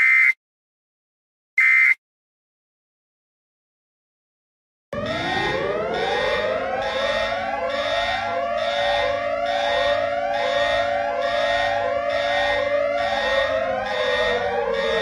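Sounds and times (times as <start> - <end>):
rising electronic siren sweeps: 5.0 - 15.0
steady held tone: 5.0 - 15.0.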